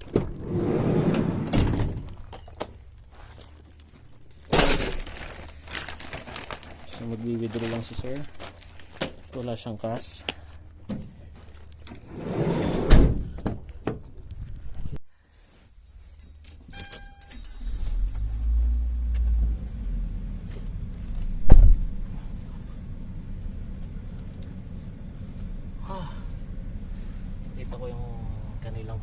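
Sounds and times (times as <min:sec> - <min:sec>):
vehicle engine rumbling: 0:00.0 - 0:15.0, 0:15.7 - 0:29.0
keys jangling: 0:15.2 - 0:20.0.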